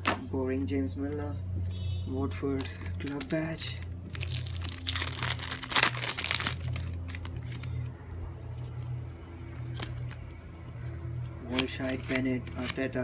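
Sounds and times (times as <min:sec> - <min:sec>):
wrapper tearing and crinkling: 0:02.6 - 0:07.8.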